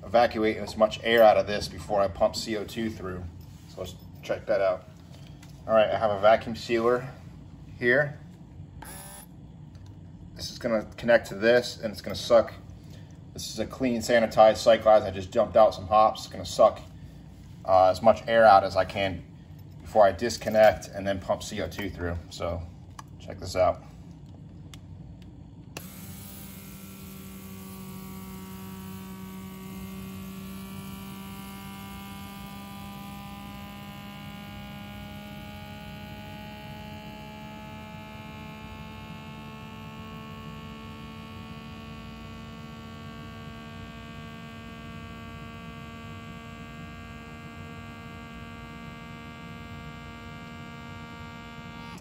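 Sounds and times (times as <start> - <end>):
vacuum pump motor humming: 8.8 - 10.7, 23.2 - 52.0.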